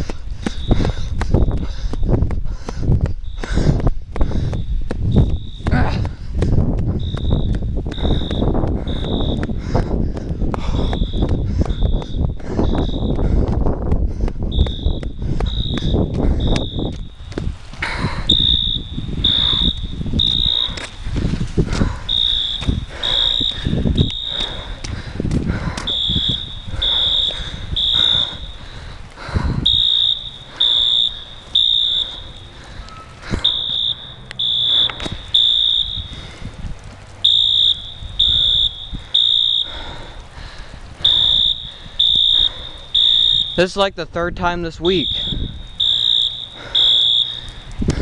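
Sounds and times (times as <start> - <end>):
fire alarm beeping: 3.2 - 3.5, 4.6 - 5.8, 6.9 - 9.6, 10.7 - 13.2, 14.5 - 17.3, 18.2 - 20.9, 21.9 - 24.8, 25.8 - 28.7, 29.6 - 36.4, 37.2 - 39.9, 41.0 - 43.9, 44.7 - 47.6.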